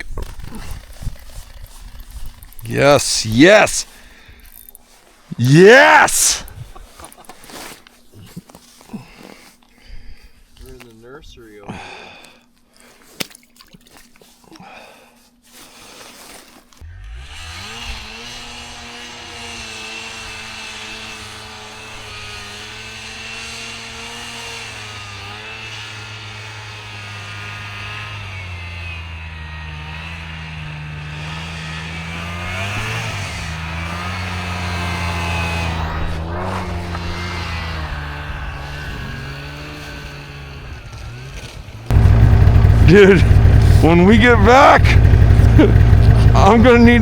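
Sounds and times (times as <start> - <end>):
small vehicle engine running: 16.9 - 47.0.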